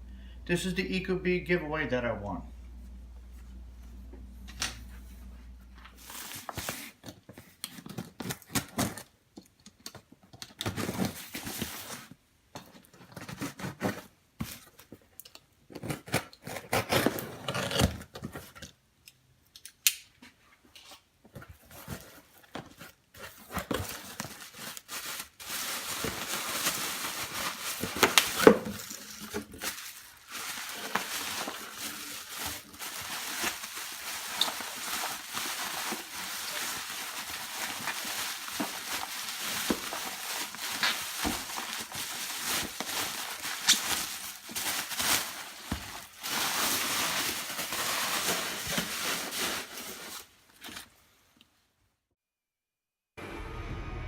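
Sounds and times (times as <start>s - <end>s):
packaging tearing and crinkling: 15.7s - 18.5s, 23.3s - 50.9s.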